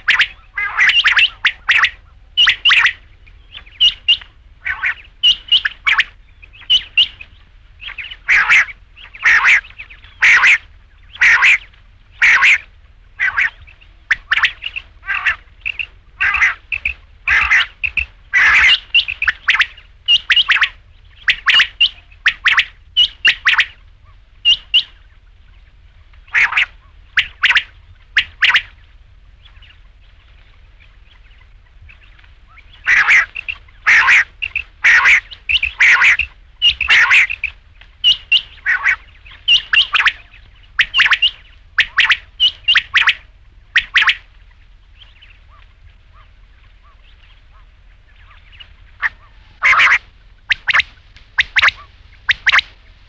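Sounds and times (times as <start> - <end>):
quail calling: 0.0 - 53.0.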